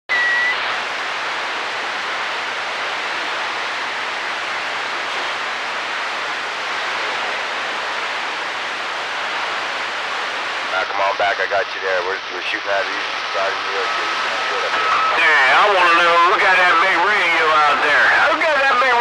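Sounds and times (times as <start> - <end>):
radio static hiss: 0.1 - 19.0.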